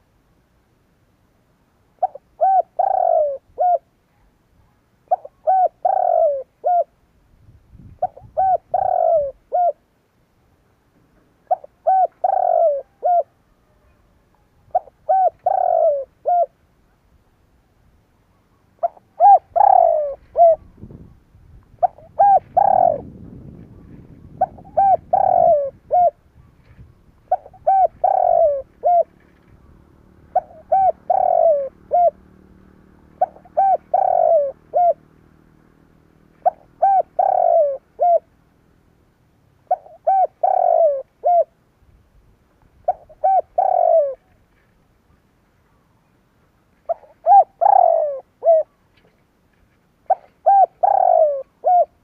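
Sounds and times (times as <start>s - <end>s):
dove cooing: 1.9s - 7.0s, 7.9s - 9.9s, 11.4s - 16.6s, 18.6s - 35.6s, 36.3s - 38.4s, 39.6s - 41.6s, 42.8s - 44.6s, 46.8s - 48.8s, 50.0s - 52.0s.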